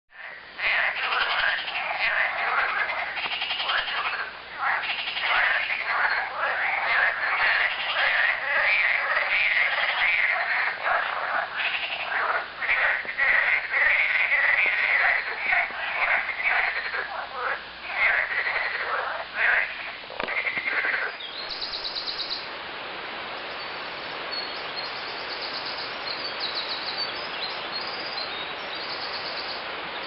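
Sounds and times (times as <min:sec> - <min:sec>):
chorus of frogs croaking: 0:00.1 - 0:22.5.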